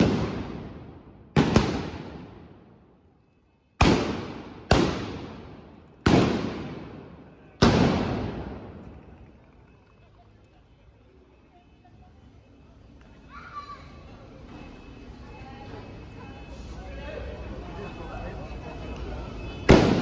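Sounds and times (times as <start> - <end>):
loud gunshots with echo: 0.0 - 2.6, 3.8 - 8.8, 19.7 - 20.0.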